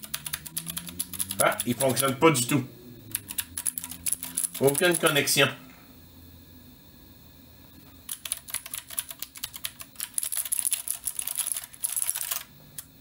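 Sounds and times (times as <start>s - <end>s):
mechanical keyboard typing: 0.0s - 2.1s, 3.1s - 5.2s, 8.1s - 12.9s.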